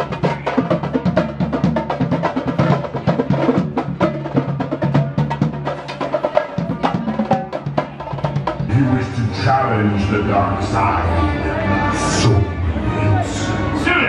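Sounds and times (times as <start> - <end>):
fast drum beat: 0.0 - 9.5
steady bass line: 8.6 - 14.0.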